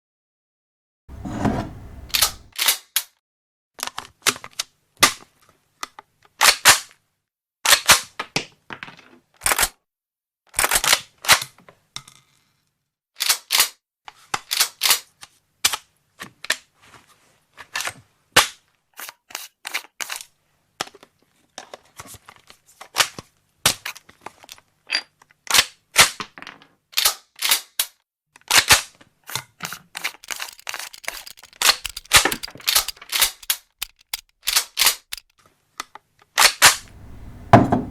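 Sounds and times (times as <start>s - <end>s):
firearm parts clicking and clacking: 30.2s - 35.3s.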